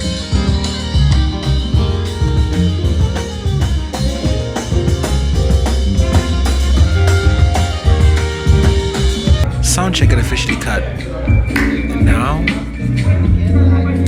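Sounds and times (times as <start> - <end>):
heavy bass: 0.0 - 14.0
drum beat: 4.7 - 10.9, 12.0 - 12.7.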